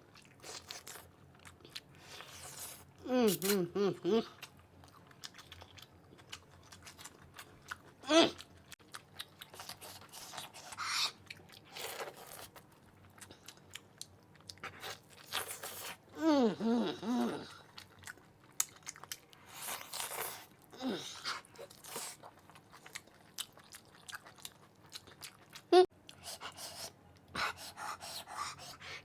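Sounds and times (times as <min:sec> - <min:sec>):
person humming: 0:03.1 - 0:04.3, 0:08.1 - 0:08.3, 0:16.2 - 0:17.5
person chewing with mouth smacks: 0:04.3 - 0:16.0, 0:17.0 - 0:20.6, 0:21.2 - 0:29.0.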